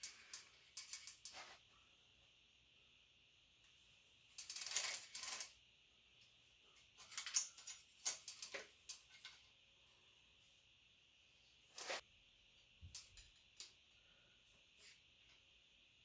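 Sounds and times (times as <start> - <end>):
bicycle chain rattling: 0.0 - 1.4, 4.4 - 5.6.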